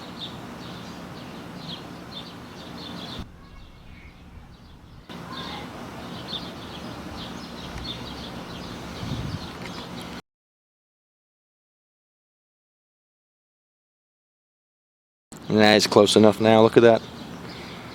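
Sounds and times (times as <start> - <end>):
small birds chirping: 0.0 - 10.2, 15.4 - 17.9
steady low hum: 0.0 - 10.2.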